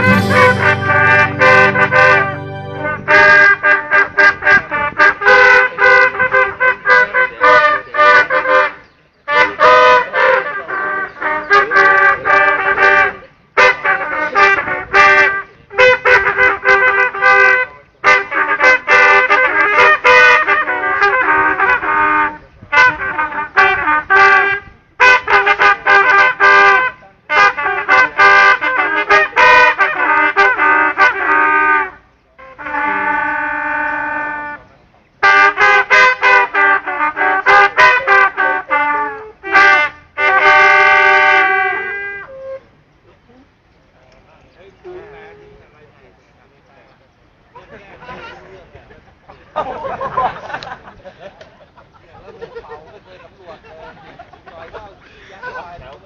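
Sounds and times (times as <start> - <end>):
bugle playing short notes: 0.0 - 6.0.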